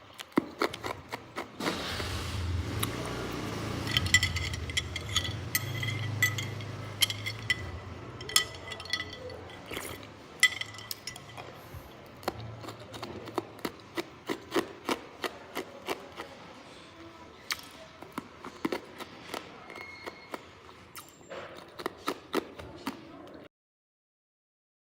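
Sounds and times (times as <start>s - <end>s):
ringing clinks: 3.8s - 9.6s.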